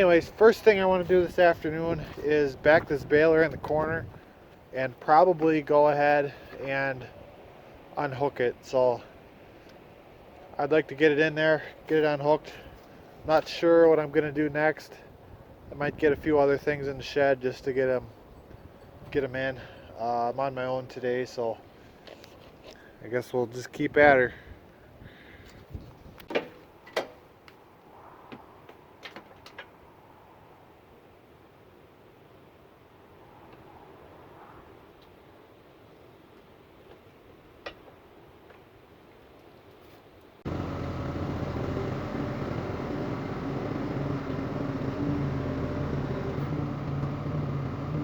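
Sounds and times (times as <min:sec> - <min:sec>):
tractor diesel engine running: 0:40.5 - 0:48.0.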